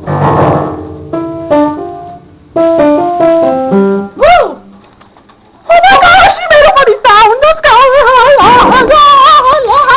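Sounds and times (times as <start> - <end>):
electronic keyboard tune: 0.9 - 4.2.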